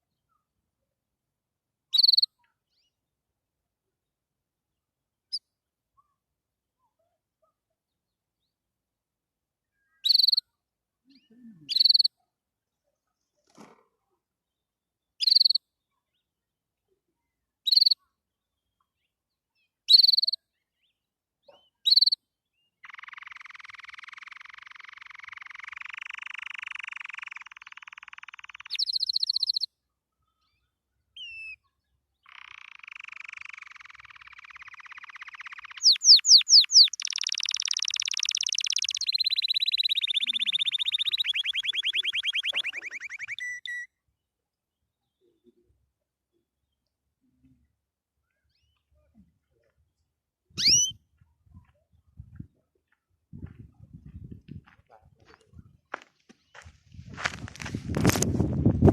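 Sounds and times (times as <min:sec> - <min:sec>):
canary song with trills: 0:01.9 - 0:03.2, 0:09.6 - 0:58.9
canary call notes: 0:32.2 - 0:43.9, 0:50.6 - 0:51.0.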